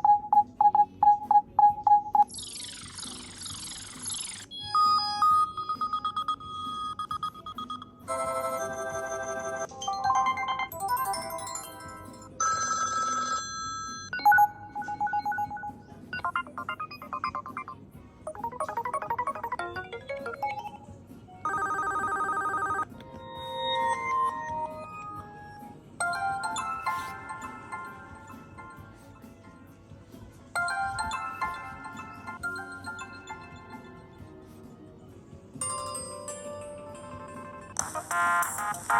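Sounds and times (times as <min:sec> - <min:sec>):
phone ringtones and notification tones: 0:00.0 - 0:29.1, 0:30.6 - 0:34.3.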